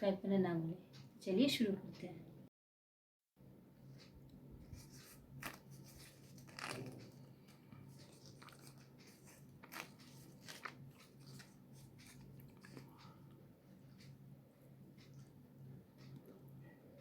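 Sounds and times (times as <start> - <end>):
low steady hum: 3.4 - 17.0
bread tearing and chewing: 5.4 - 7.3, 8.0 - 13.0.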